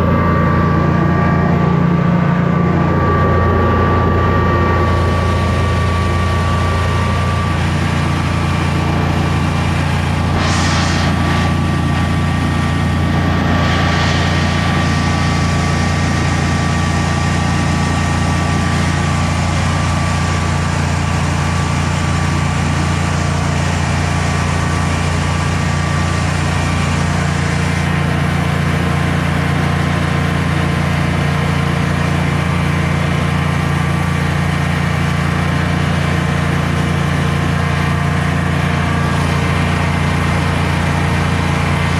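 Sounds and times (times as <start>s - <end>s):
generator engine running: 0.0s - 41.9s
brief hisses: 9.7s - 16.0s.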